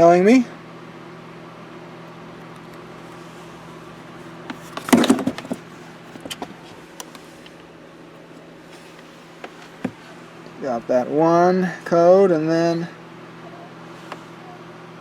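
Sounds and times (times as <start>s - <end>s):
clatter and rustling: 4.5s - 7.6s.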